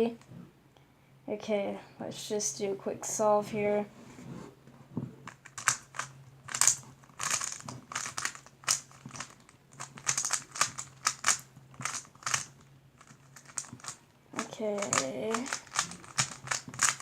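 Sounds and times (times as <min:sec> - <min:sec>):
faint low hum: 0:00.0 - 0:17.0
puzzle cube plastic clacks: 0:05.3 - 0:17.0.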